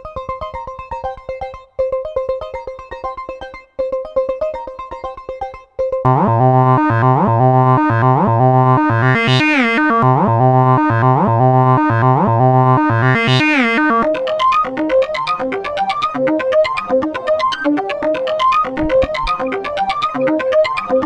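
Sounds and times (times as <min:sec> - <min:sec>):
rising synth sweep: 0:06.1 - 0:14.0
quick plucked notes: 0:06.1 - 0:14.4
pulsing keyboard chords: 0:06.1 - 0:21.0.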